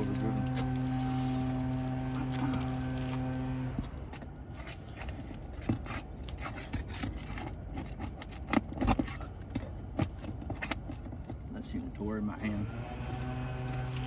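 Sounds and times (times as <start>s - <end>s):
shingles tearing: 0.0s - 11.2s
tools scraping and clicking: 3.8s - 11.4s.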